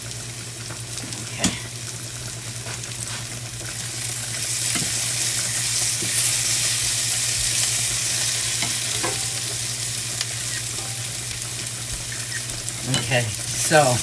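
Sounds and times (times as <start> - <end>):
steaks sizzling on a grill: 0.0 - 14.0
low hum: 3.7 - 12.9.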